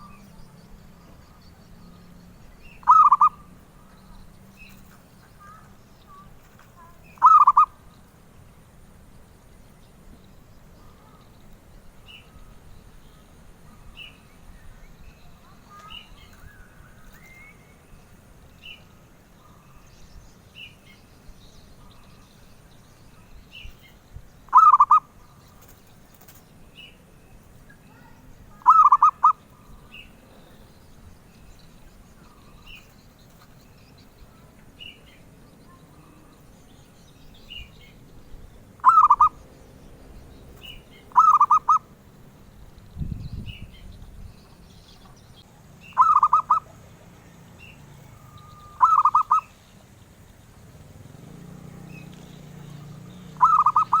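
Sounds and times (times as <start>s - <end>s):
dove cooing: 2.8s - 3.5s, 7.2s - 7.8s, 24.5s - 25.1s, 28.6s - 29.8s, 38.8s - 39.4s, 40.6s - 41.9s, 46.0s - 46.9s, 48.0s - 49.6s, 53.3s - 54.0s
faint high chirp: 10.2s - 38.2s, 43.0s - 49.7s.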